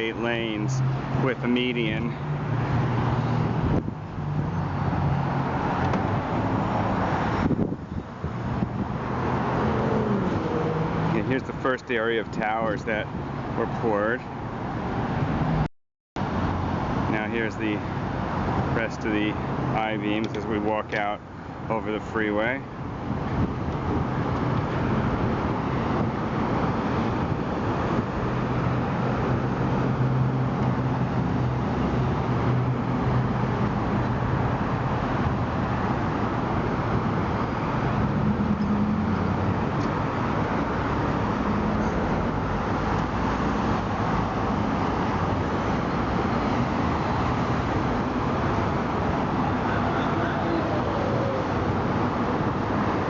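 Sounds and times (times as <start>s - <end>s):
freeway traffic roar: 0.0s - 53.0s
vehicle engine hum passing: 0.3s - 11.5s, 22.7s - 53.0s.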